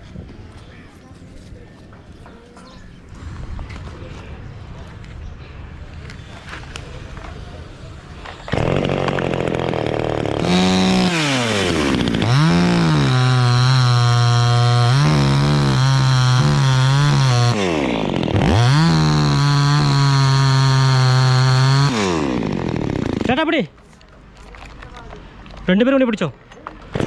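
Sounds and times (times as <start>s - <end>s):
chainsaw cutting wood: 8.5s - 23.4s.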